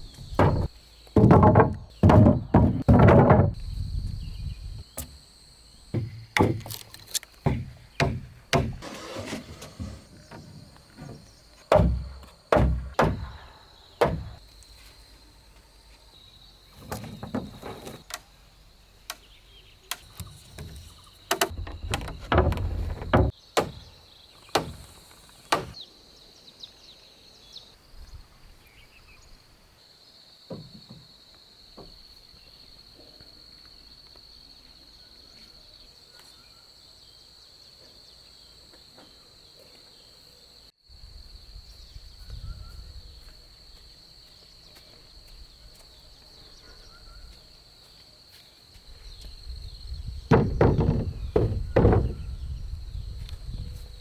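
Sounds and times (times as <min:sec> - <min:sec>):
sharp knocks on wood: 0:00.2 - 0:03.6, 0:06.0 - 0:06.8, 0:07.4 - 0:08.8, 0:11.7 - 0:13.4, 0:14.0 - 0:14.4, 0:21.3 - 0:23.9, 0:24.6 - 0:24.8, 0:25.5 - 0:25.8, 0:50.3 - 0:52.3.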